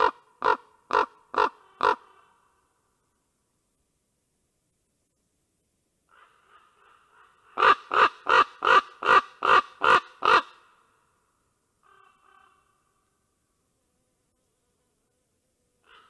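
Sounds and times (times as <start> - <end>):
raven croaking: 0.0 - 2.4
faint raven calls: 0.0 - 3.0, 6.0 - 13.5, 15.8 - 16.0.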